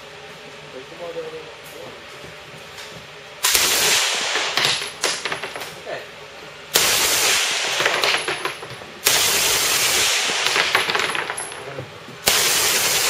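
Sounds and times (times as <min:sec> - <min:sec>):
automatic gunfire bursts: 0:03.4 - 0:04.8, 0:06.7 - 0:08.3, 0:09.0 - 0:11.0, 0:12.2 - 0:13.0.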